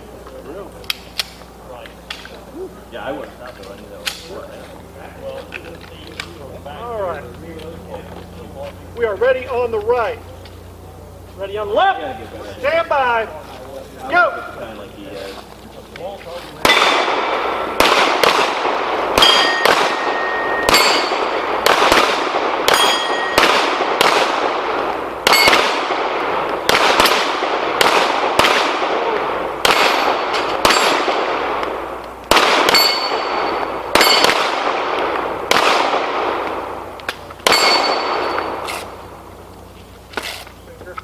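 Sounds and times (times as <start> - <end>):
pistol shots: 16.6 - 39.3
steel plate ringing: 19.2 - 21.5, 22.6 - 23.5, 25.2 - 25.8, 29.7 - 31.1, 32.7 - 34.4, 37.5 - 38.9.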